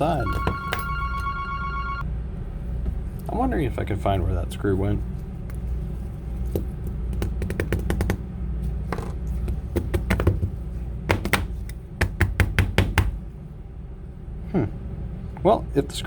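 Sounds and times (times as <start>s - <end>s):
low hum: 0.0s - 2.5s.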